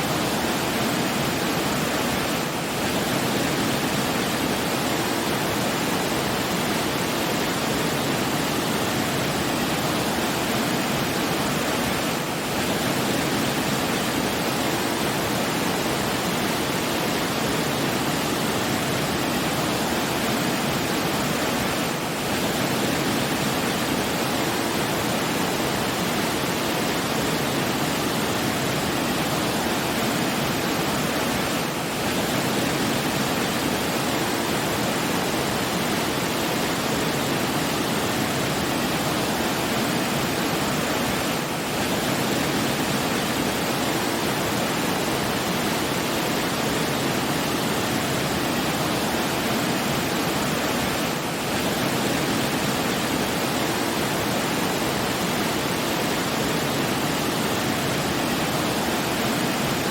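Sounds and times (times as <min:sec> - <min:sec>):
rushing water: 0:00.0 - 0:59.9.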